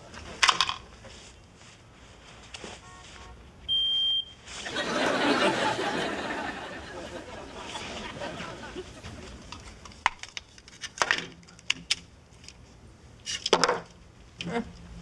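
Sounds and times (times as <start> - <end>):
smoke detector beep: 2.8 - 4.4
audience laughing: 4.6 - 9.4.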